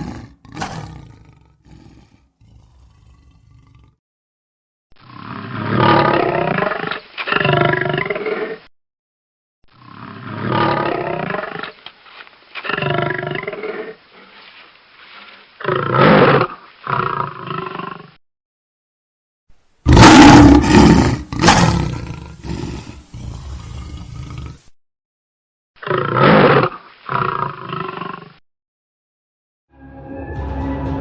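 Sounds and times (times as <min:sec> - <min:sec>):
lion roaring: 0:00.0 - 0:04.0, 0:19.9 - 0:24.7.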